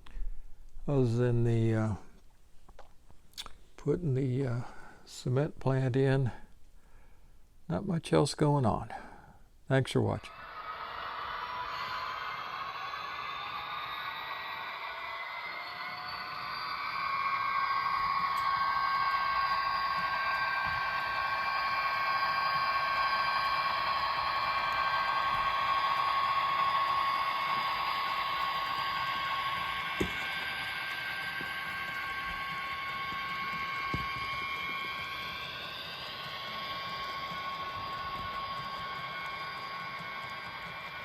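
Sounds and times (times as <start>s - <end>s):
model train motor whining: 10.2s - 41.0s.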